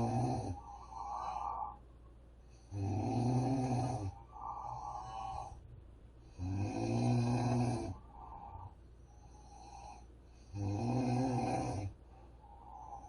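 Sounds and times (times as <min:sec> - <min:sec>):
woman snoring loudly: 0:00.0 - 0:01.6, 0:02.7 - 0:05.5, 0:06.4 - 0:08.0, 0:10.5 - 0:11.9
quiet breathing: 0:00.0 - 0:13.0.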